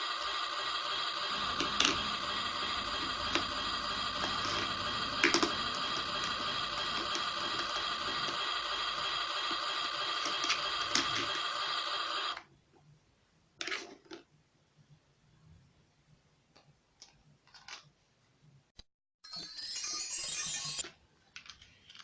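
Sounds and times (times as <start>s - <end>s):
toy speaker hissing: 0.0s - 12.4s.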